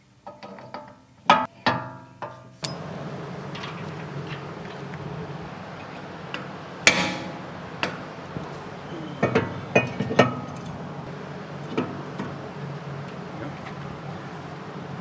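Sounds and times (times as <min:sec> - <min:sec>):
hammer clanging on metal: 0:01.3 - 0:02.9, 0:06.4 - 0:08.1.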